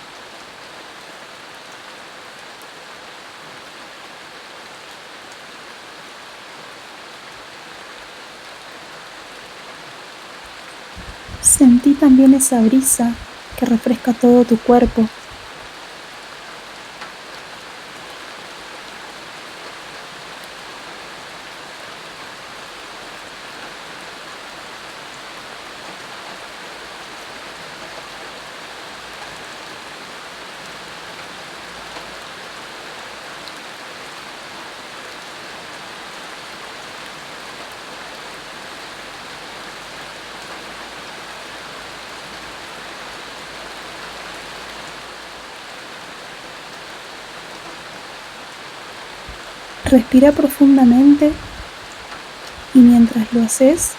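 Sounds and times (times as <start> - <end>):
rain falling on ground and leaves: 0.0 - 53.9.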